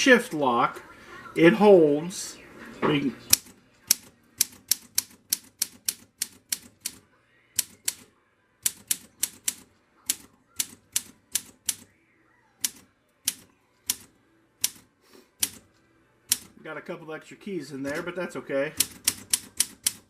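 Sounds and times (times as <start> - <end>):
manual typewriter typing: 3.3 - 7.0, 7.6 - 8.0, 8.6 - 11.9, 12.6 - 14.8, 15.4 - 15.6, 16.3 - 16.5, 18.8 - 20.0.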